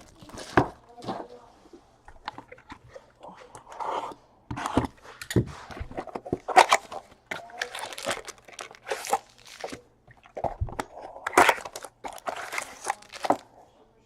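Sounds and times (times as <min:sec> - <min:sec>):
foil wrappers crinkling and tearing: 0:05.8 - 0:13.5.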